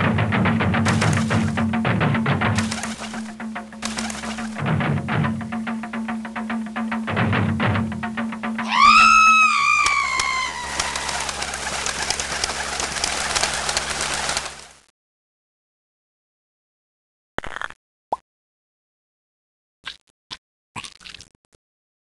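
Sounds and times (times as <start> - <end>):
cartoon bird cry sliding down: 8.6 - 11.4
dense crackling rustle: 10.9 - 14.9.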